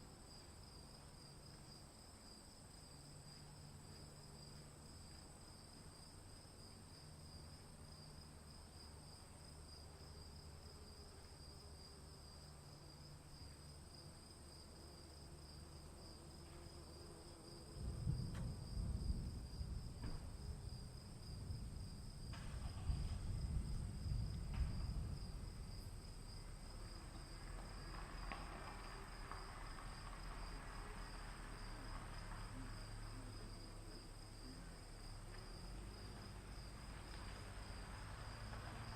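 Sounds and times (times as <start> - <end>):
insects chirring: 0.0 - 38.9
thunder rumbling: 17.8 - 26.9.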